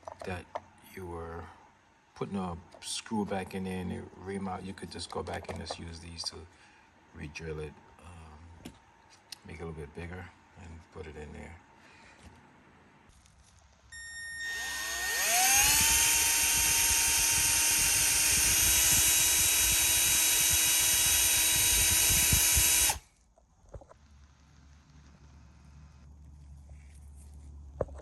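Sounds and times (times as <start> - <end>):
electric drill drilling: 14.0 - 23.1.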